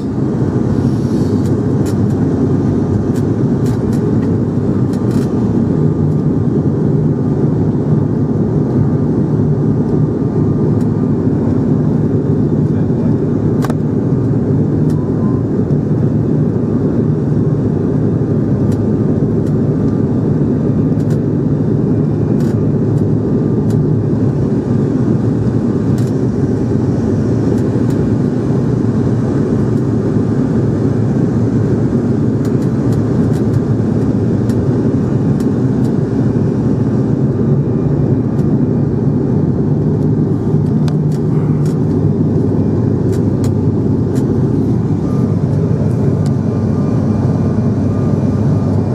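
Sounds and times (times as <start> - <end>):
rushing air: 0.0 - 6.8, 39.1 - 48.9
airliner engines droning: 0.0 - 48.9
constant low hum: 0.0 - 48.9.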